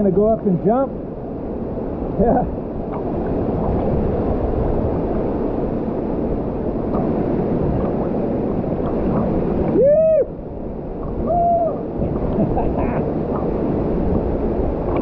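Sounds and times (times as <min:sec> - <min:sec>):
waterfall rushing: 0:08.8 - 0:13.6.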